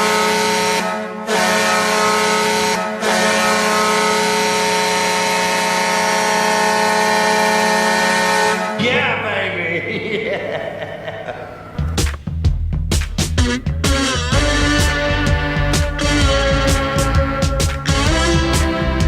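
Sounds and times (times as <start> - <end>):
goal horn blaring: 0.0 - 8.9, 13.2 - 19.0.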